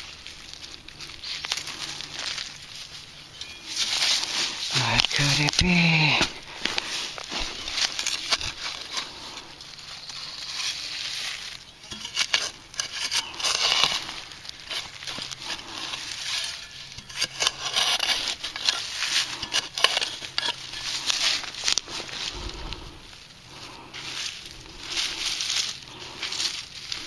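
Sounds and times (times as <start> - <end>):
digging in soil: 0.0 - 27.0.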